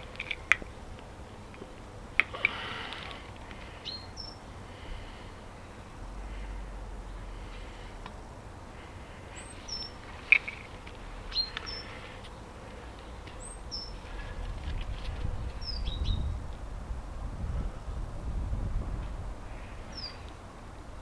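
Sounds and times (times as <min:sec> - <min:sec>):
small birds chirping: 0:00.0 - 0:16.6, 0:19.4 - 0:21.0
low rumble: 0:04.7 - 0:09.0, 0:13.6 - 0:20.0.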